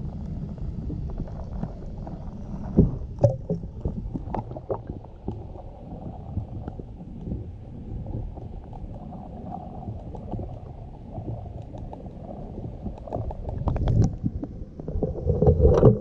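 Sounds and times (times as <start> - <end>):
muffled underwater rush: 0.0 - 16.0
underwater bubble pops and knocks: 2.6 - 9.0, 9.8 - 16.0.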